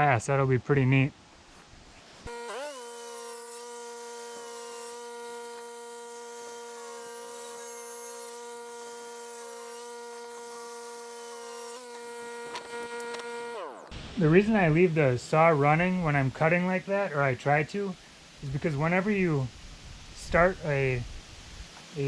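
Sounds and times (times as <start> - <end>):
power saw motor whining: 2.3 - 14.0.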